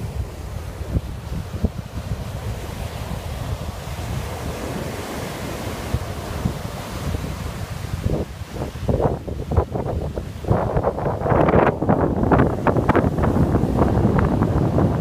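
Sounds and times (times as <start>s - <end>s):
surf breaking and washing: 0.0s - 15.0s
wind buffeting microphone: 0.0s - 15.0s.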